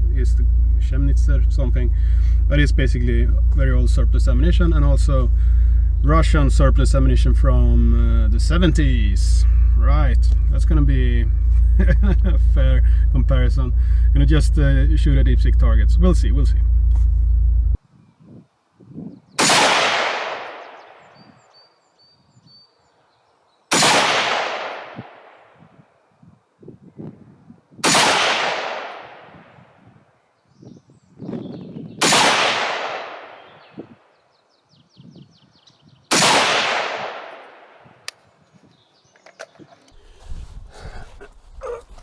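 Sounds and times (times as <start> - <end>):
gunshots with long echo: 19.4 - 21.2, 23.7 - 25.6, 27.8 - 29.6, 32.0 - 33.6, 36.1 - 38.0.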